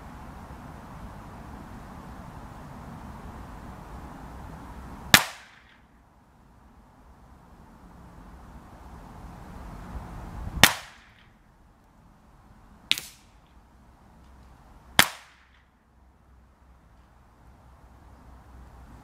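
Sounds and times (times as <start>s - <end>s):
wind rumble on microphone: 0.0s - 5.7s, 6.5s - 11.4s.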